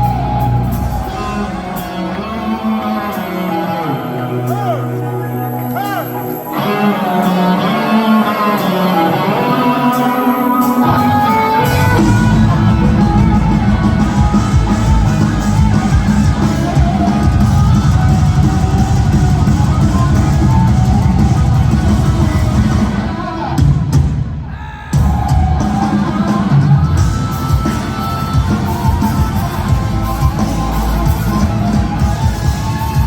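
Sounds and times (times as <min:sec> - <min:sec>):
lead electric guitar melody: 0:00.0 - 0:23.5
rock band with drums: 0:00.0 - 0:33.0
bass note: 0:11.5 - 0:16.4.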